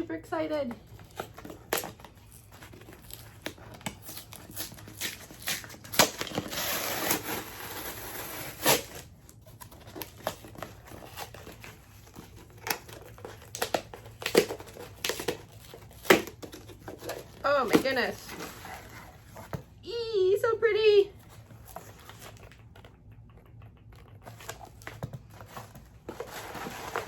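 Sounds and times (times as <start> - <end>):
cardboard tearing: 1.0 - 19.5, 24.3 - 27.0
packaging rustling and crinkling: 24.3 - 27.0.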